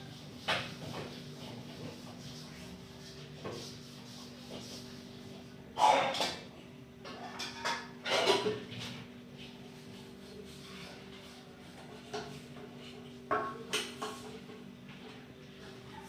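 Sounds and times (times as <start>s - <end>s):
kitchen things clattering: 7.1s - 8.8s.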